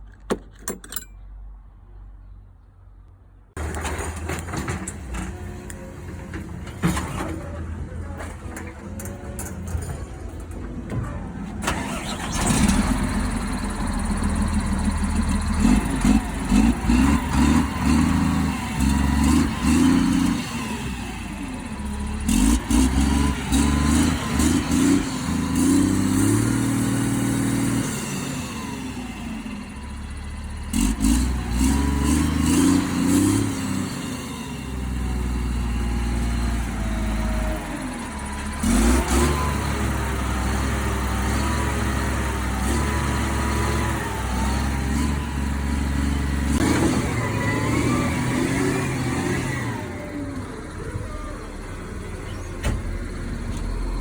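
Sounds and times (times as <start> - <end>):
diesel truck engine revving: 11.6 - 54.0.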